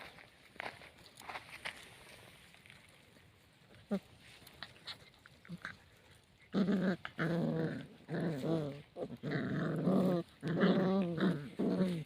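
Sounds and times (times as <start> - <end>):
dog growling and snarling: 4.6 - 12.0.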